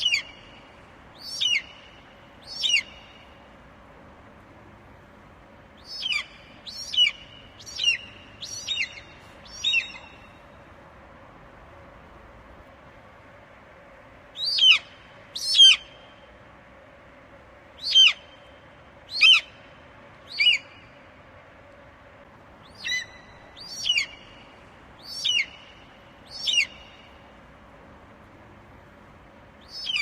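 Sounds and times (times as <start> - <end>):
eagle calling: 0.0 - 0.6, 1.2 - 3.2, 5.8 - 10.3, 14.4 - 15.9, 20.3 - 20.9, 22.6 - 27.1, 29.6 - 30.0.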